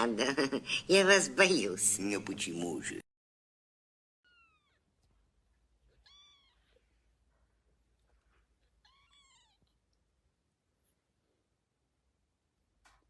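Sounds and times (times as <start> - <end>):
cat meowing faintly: 4.3 - 4.9, 6.0 - 7.0, 8.8 - 9.8.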